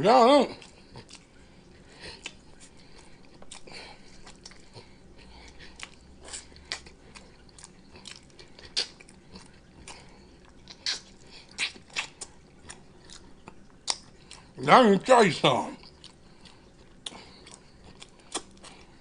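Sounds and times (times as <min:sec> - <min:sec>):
chewing and biting: 0:00.5 - 0:14.6, 0:15.8 - 0:19.0
wet mouth clicks and smacks: 0:05.5 - 0:09.1, 0:09.8 - 0:14.2, 0:17.0 - 0:18.8.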